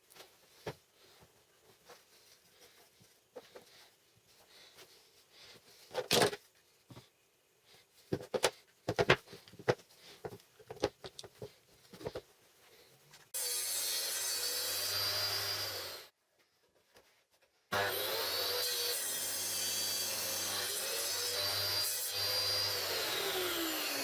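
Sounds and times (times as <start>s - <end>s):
power tool working material: 13.4s - 16.1s, 17.7s - 24.0s.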